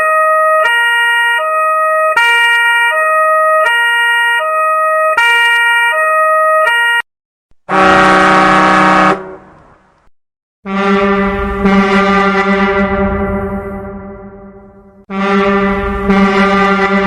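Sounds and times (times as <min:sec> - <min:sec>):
musical car horn playing tune: 0:07.7 - 0:09.5, 0:10.7 - 0:17.0.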